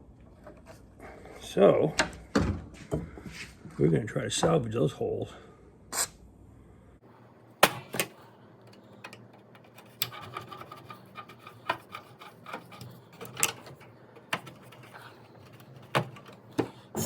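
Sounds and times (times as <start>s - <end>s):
scraping and rubbing on metal: 9.6s - 17.0s.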